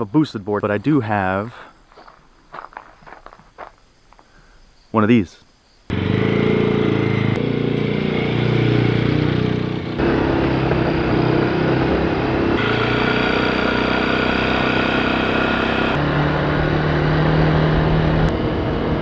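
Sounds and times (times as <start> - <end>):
small engine running: 5.9 - 19.0.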